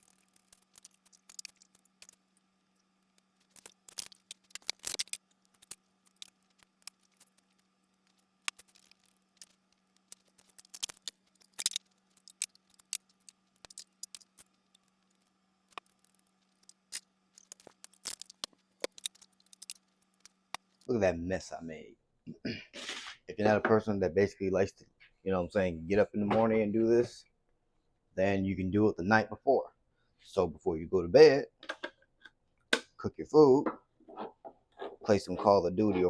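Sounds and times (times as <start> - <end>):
faint low hum: 0.0 - 36.0
food containers clicking and scraping: 34.0 - 36.0.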